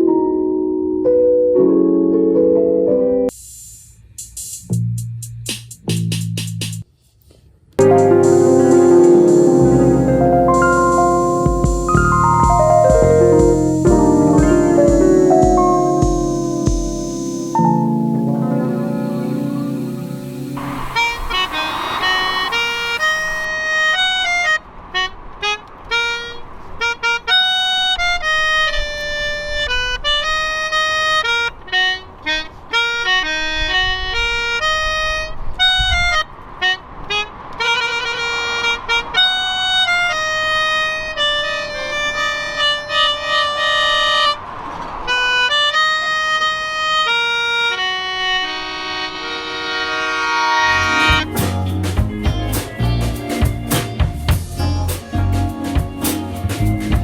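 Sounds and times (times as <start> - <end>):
slow instrumental melody: 0.0 - 3.3, 7.8 - 24.3, 46.2 - 57.0.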